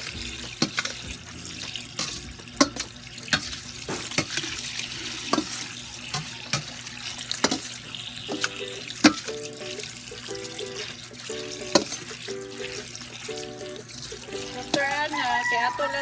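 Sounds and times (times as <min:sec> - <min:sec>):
tap water running into sink: 0:00.0 - 0:16.0.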